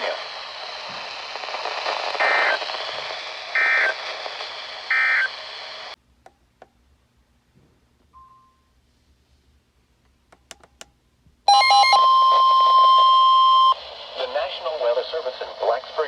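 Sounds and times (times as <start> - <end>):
radio static hiss: 0.0 - 6.0, 12.3 - 16.0
faint beep: 8.1 - 8.8, 11.5 - 13.8
clicks: 10.0 - 11.0.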